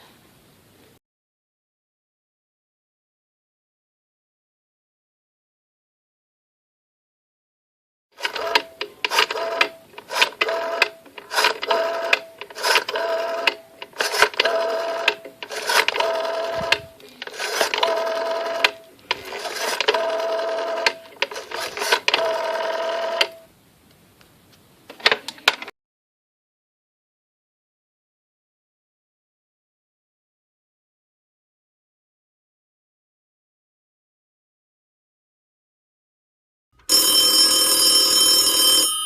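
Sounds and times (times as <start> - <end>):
rapid mechanical telephone clicking: 8.2 - 23.4
steady telephone tone: 22.1 - 23.5, 36.8 - 39.0.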